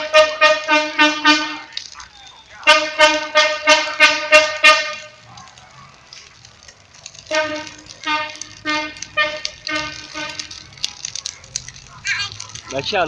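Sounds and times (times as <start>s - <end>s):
car horn toots: 0.0s - 5.3s, 7.3s - 10.9s.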